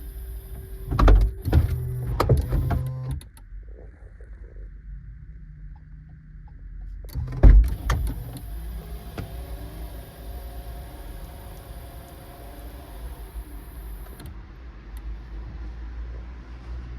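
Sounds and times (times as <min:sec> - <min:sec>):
electric motor whining: 0:07.2 - 0:14.3.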